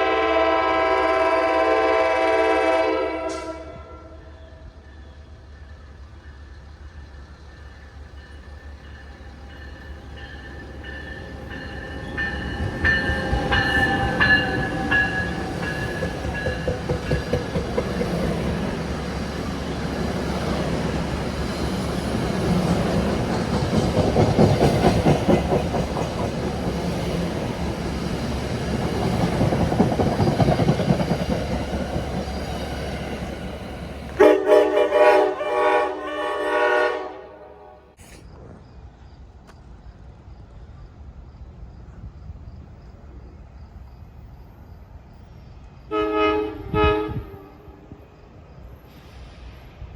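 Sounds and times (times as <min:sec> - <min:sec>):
train horn chord: 0:00.0 - 0:04.3, 0:34.2 - 0:38.0, 0:45.9 - 0:48.0
train wheels rumbling and clacking: 0:04.2 - 0:35.6.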